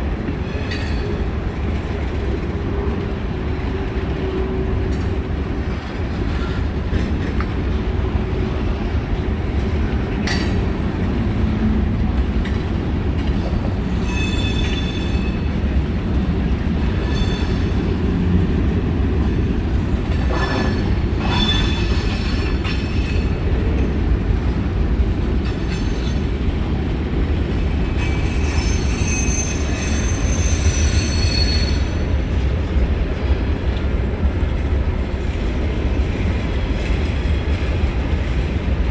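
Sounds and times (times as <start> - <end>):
freight train cars rumbling past: 0.0 - 38.9
high-pitched wheel squeal: 13.9 - 15.5, 17.0 - 17.8, 20.0 - 26.3, 27.4 - 32.0.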